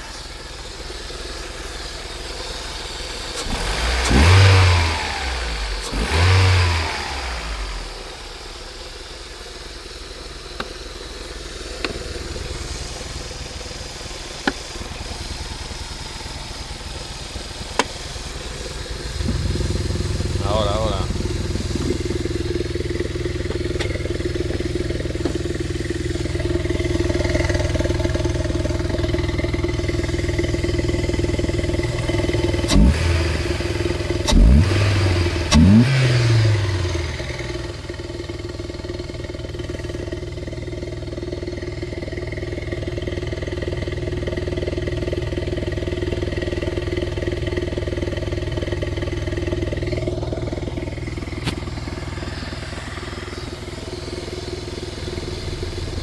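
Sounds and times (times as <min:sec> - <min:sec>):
car engine idling and revving: 0:00.0 - 0:56.0
strange internal engine noise: 0:00.0 - 0:56.0.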